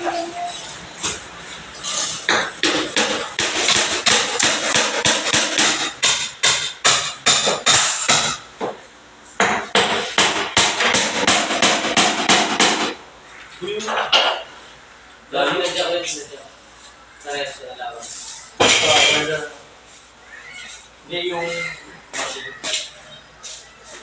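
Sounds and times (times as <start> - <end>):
hammer striking fast: 2.2 - 8.4, 9.4 - 13.0.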